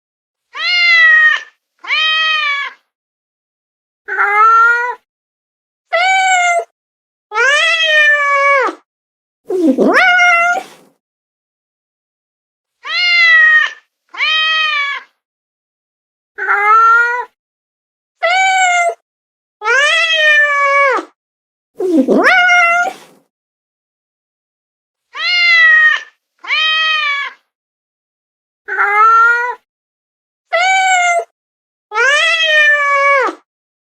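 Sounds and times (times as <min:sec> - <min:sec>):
cat meowing: 0:00.6 - 0:02.8, 0:09.5 - 0:10.9, 0:12.8 - 0:15.1, 0:21.8 - 0:23.2, 0:25.2 - 0:27.4, 0:30.5 - 0:31.3, 0:32.0 - 0:33.4.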